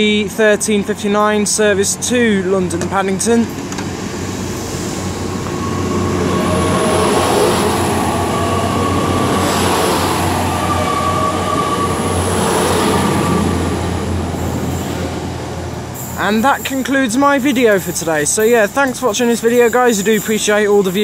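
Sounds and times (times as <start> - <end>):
train pulling out: 2.0 - 20.6
steady whine: 2.1 - 18.4.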